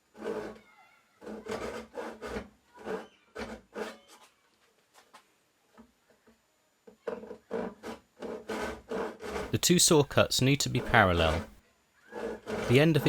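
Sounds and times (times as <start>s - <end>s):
hand saw cutting wood: 0.1s - 0.6s, 1.2s - 4.0s, 7.1s - 9.5s, 12.1s - 13.0s.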